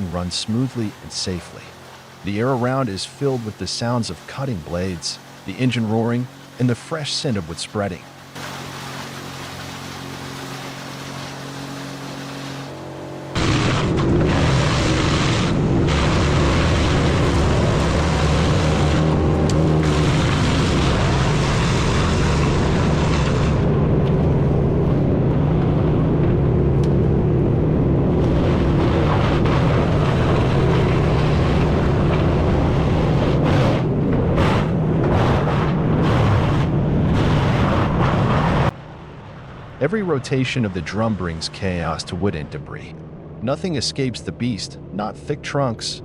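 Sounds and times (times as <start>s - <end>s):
wood chipper engine drone: 0.0s - 46.0s
blades shredding wood: 8.4s - 23.8s, 28.1s - 38.7s.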